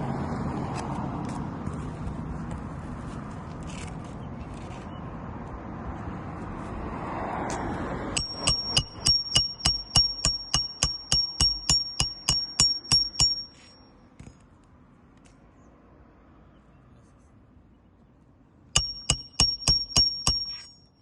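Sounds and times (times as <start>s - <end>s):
ringing strikes on hard object: 8.2s - 13.8s, 18.8s - 21.0s.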